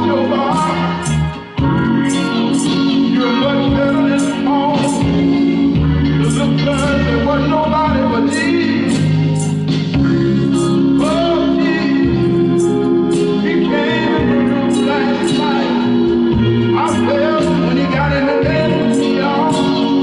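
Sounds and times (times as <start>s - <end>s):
cymbal beat: 0.0s - 7.2s
bass and keyboard chords: 0.0s - 20.0s
gospel singing: 0.0s - 20.0s.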